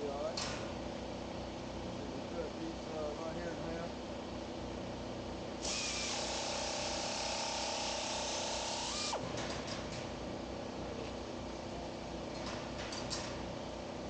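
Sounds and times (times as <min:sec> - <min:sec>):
power tool cutting sheet steel: 0:05.6 - 0:09.3.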